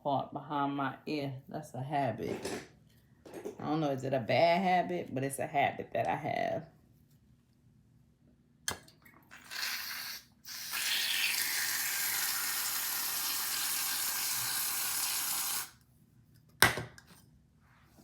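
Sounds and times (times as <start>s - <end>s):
aerosol can hissing: 9.5s - 15.8s.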